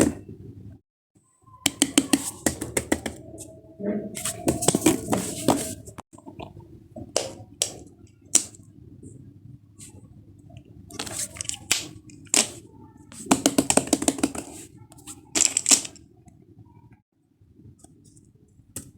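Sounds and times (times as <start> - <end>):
plastic fidget toys clicking: 15.4 - 16.0.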